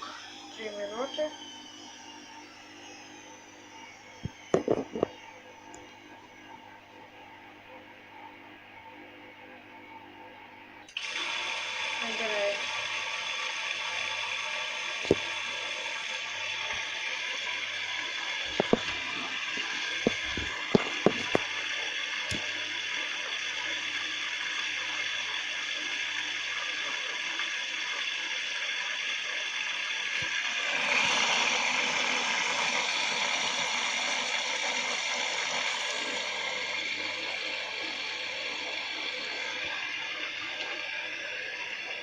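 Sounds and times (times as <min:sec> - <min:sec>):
water running into washing machine: 0:00.0 - 0:01.3, 0:10.9 - 0:42.0.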